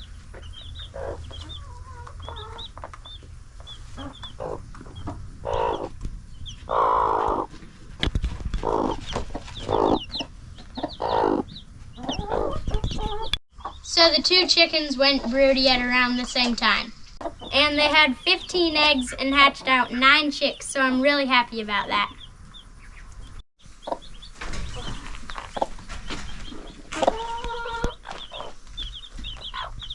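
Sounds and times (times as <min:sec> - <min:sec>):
hens clucking: 0:00.0 - 0:07.6, 0:08.5 - 0:16.4, 0:22.5 - 0:29.9
chicks peeping: 0:00.0 - 0:21.0, 0:21.6 - 0:29.9.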